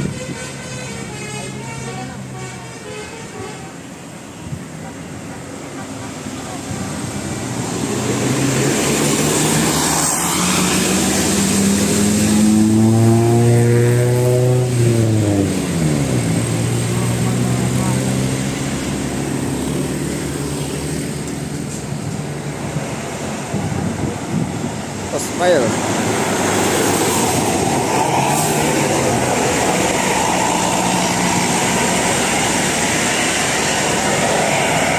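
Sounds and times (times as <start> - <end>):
bus engine accelerating: 0.0 - 34.9
rush of noise: 4.0 - 34.9.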